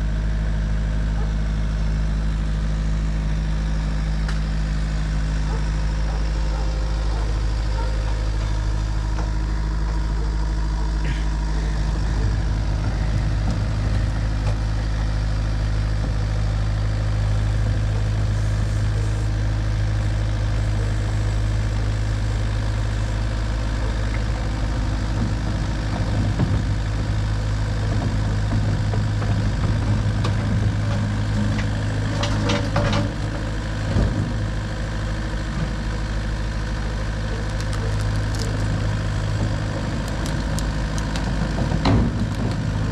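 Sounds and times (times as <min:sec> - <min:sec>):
engine idling: 0:00.0 - 0:42.9
knocks and rattles: 0:39.4 - 0:42.9.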